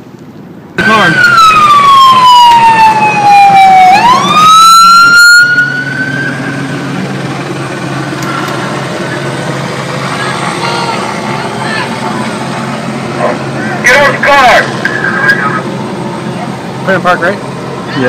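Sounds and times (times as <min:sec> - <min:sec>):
police siren wailing: 0:00.8 - 0:18.0
steady low hum: 0:06.3 - 0:18.0.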